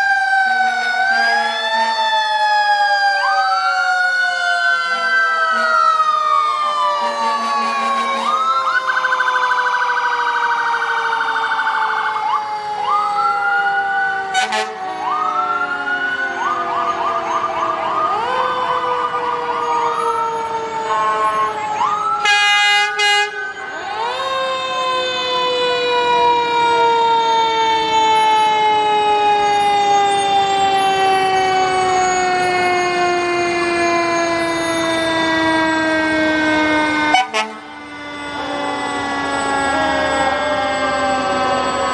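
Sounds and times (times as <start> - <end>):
fire truck sirens wailing: 0.0 - 41.9
sirens whooping and warbling: 0.0 - 41.9
many-toned horn blast: 7.0 - 8.4, 14.3 - 14.8, 22.2 - 23.5, 37.1 - 37.8.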